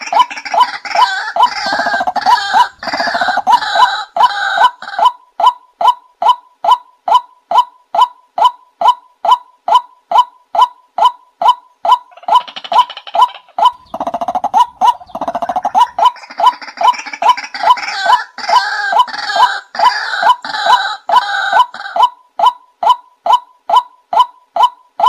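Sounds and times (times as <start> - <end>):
waterhen calling: 0.0 - 24.8.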